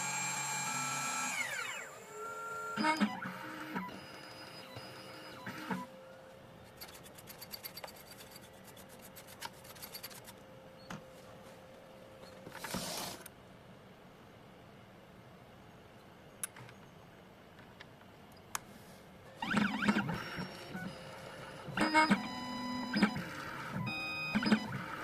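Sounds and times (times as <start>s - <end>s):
motor whir: 0.0s - 3.2s
machine motors clicking: 19.4s - 25.0s.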